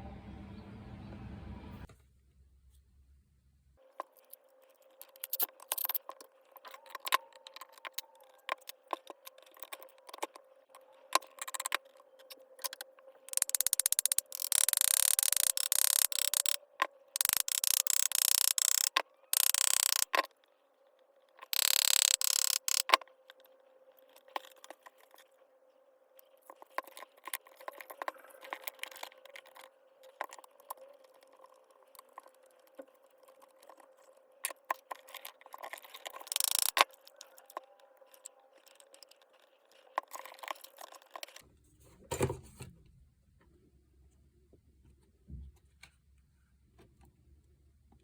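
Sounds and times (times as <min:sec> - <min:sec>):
faint steady hum: 0:00.0 - 0:05.2
small metal parts clicking: 0:03.9 - 0:20.4, 0:21.3 - 0:25.3, 0:26.2 - 0:41.4.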